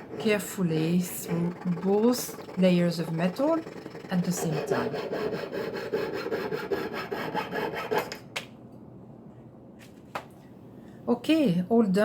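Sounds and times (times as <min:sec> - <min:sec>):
saw cutting metal: 0:00.0 - 0:08.2.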